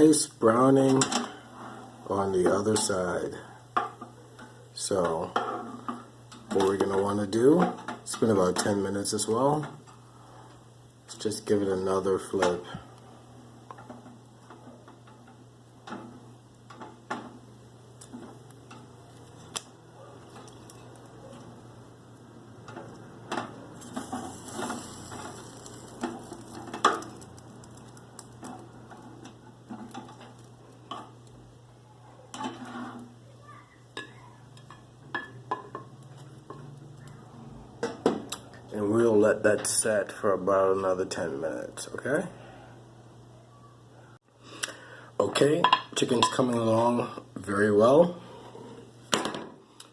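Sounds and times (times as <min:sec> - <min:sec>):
chicken sizzling: 0:00.0 - 0:38.5.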